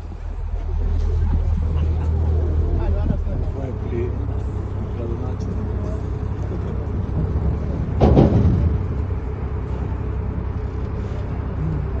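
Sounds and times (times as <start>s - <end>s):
boat engine idling: 0.0s - 12.0s
loud thump: 7.9s - 9.2s.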